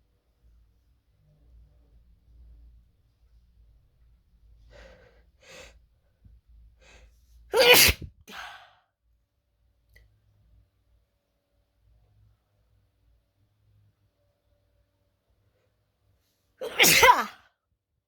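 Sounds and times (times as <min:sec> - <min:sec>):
person sneezing: 0:07.5 - 0:08.6, 0:16.6 - 0:17.4.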